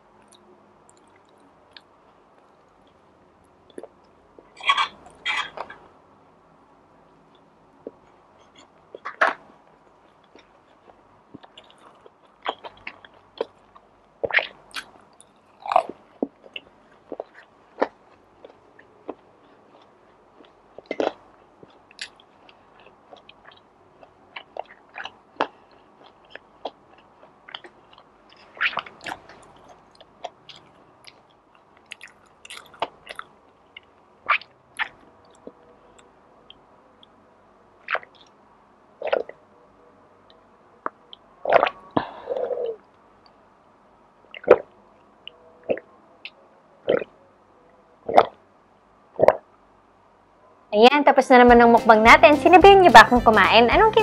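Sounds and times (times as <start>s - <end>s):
person chewing food: 0.2s - 5.8s, 7.3s - 37.2s, 37.8s - 38.4s, 39.0s - 39.4s, 40.3s - 43.4s
wet mouth clicks: 24.3s - 36.6s, 37.8s - 38.3s, 39.0s - 39.4s, 40.9s - 41.8s.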